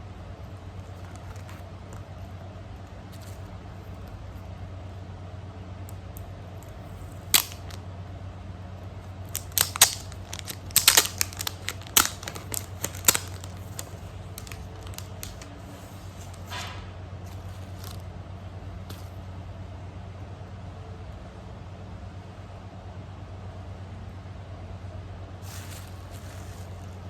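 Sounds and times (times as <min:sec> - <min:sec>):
steady low hum: 0:00.0 - 0:27.0
packaging clicks and taps: 0:09.3 - 0:15.6.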